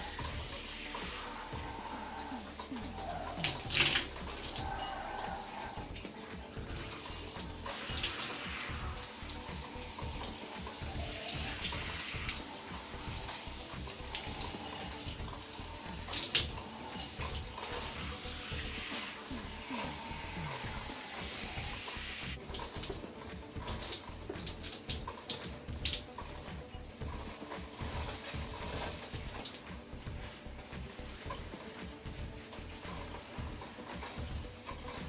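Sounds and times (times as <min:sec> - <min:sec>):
shower water spraying: 0:00.0 - 0:35.0
water splashes: 0:00.0 - 0:35.0.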